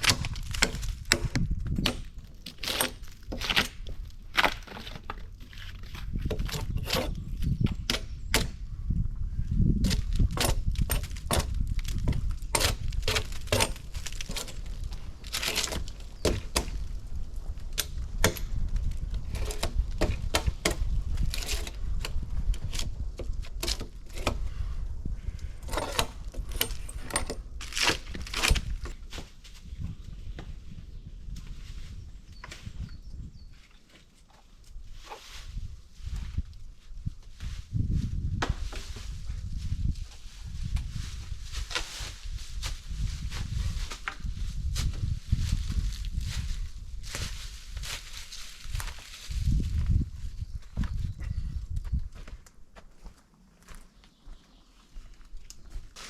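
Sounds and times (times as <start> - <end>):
twigs cracking and snapping: 0.0 - 8.6, 9.8 - 24.5, 25.2 - 29.3, 45.7 - 49.9.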